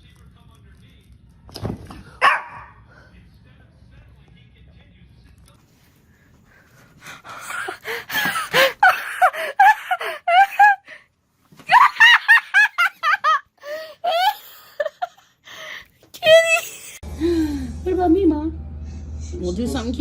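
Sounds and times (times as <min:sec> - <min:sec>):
high-pitched laughter: 0:07.5 - 0:11.0, 0:11.7 - 0:15.2.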